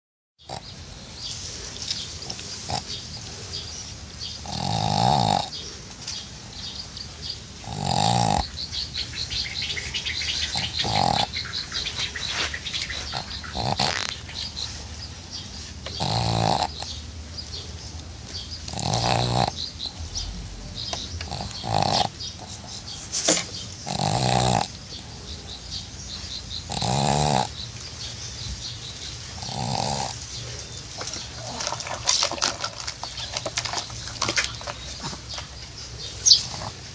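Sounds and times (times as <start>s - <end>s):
dog snoring loudly: 2.6s - 3.0s, 4.2s - 5.7s, 7.6s - 12.2s, 12.8s - 14.6s, 15.8s - 17.0s, 18.6s - 23.0s, 23.8s - 25.1s, 26.6s - 27.6s, 29.4s - 30.6s.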